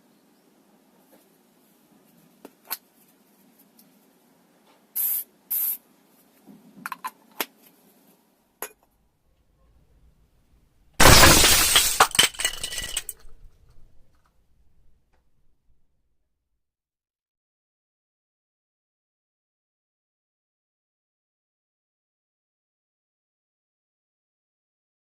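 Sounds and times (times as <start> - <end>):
spray can bursting with hiss: 5.0 - 5.8
clinks: 11.0 - 14.0.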